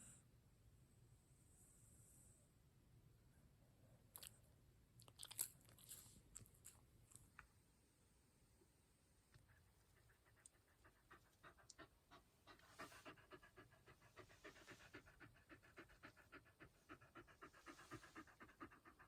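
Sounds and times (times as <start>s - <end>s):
dog breathing quickly: 9.5s - 19.0s.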